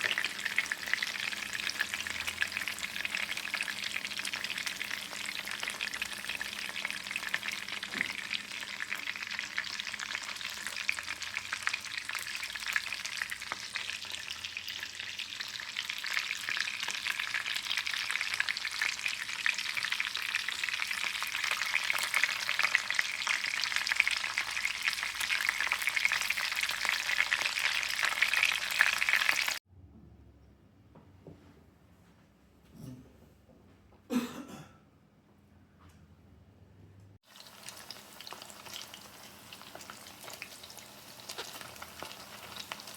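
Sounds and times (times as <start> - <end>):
food frying in hot oil: 0.0 - 29.6, 37.2 - 42.9.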